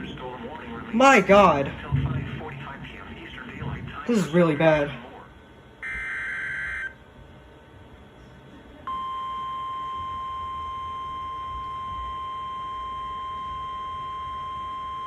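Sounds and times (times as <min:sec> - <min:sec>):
steady warning alarm tone: 0:05.8 - 0:07.0, 0:08.9 - 0:15.0.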